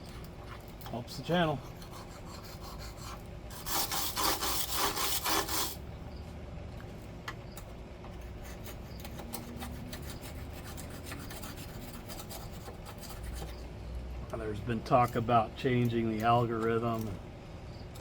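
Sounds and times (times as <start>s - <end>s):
hand scraping grime off metal: 1.2s - 5.8s, 8.1s - 13.6s.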